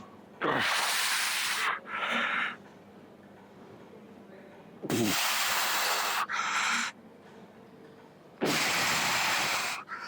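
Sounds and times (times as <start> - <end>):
man breathing hard: 0.5 - 2.6, 4.9 - 7.0, 8.4 - 10.0.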